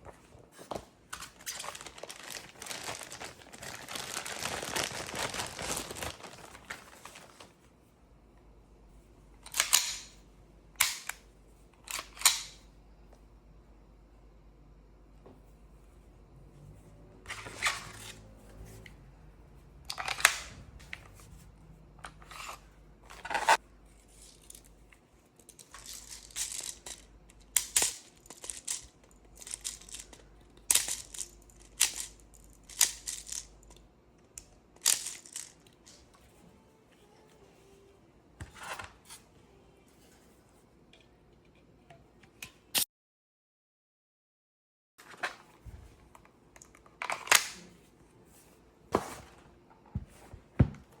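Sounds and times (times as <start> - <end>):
scraping or tearing noises: 1.2 - 7.5.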